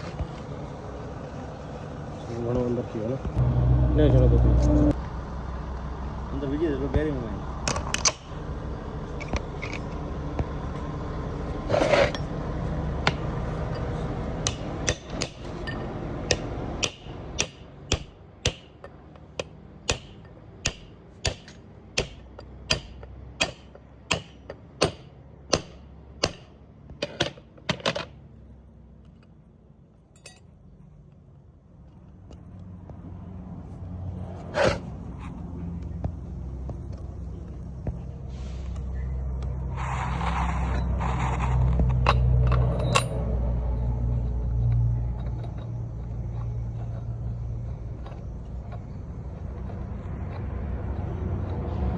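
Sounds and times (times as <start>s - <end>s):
hammer striking metal: 14.4s - 26.6s.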